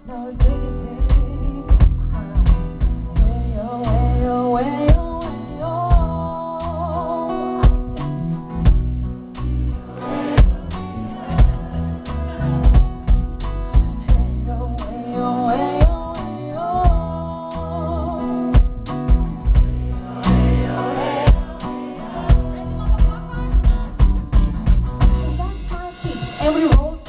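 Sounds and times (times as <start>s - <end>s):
person singing wordless vocal: 0.0s - 2.4s, 3.1s - 7.9s, 9.8s - 12.8s, 14.0s - 18.7s, 19.8s - 24.2s, 25.2s - 27.0s
live band music: 0.1s - 27.0s.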